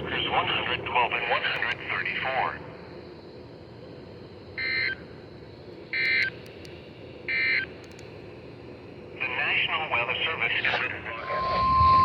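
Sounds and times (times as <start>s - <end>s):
radio hiss: 0.0s - 2.7s, 9.2s - 11.7s
data tone bursts: 11.2s - 12.0s.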